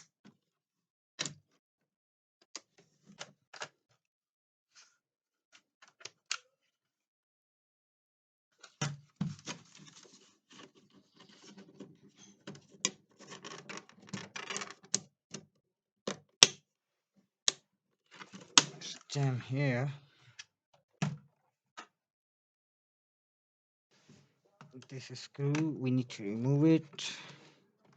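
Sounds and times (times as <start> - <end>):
plastic clicks and scraping: 9.4 - 15.5.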